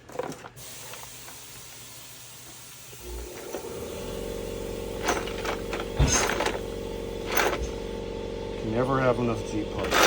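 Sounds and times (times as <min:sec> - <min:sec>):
metal parts clinking: 0:00.0 - 0:01.0, 0:05.0 - 0:06.6, 0:07.3 - 0:07.7, 0:09.8 - 0:10.0
small electric motor humming: 0:03.0 - 0:10.0.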